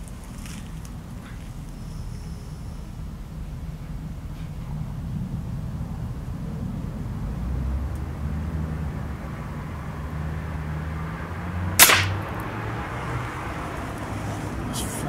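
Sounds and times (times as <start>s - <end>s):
pellet rifle shot: 11.8s - 12.4s.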